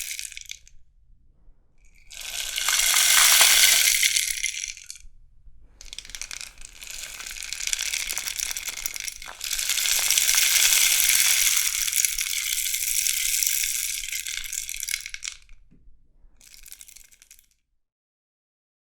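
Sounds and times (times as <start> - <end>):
rainstick trickling: 2.1 - 4.9, 5.8 - 15.4.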